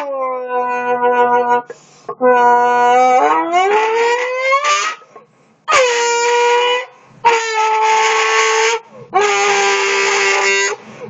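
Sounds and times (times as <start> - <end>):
voice imitating car noises: 0.0 - 4.7.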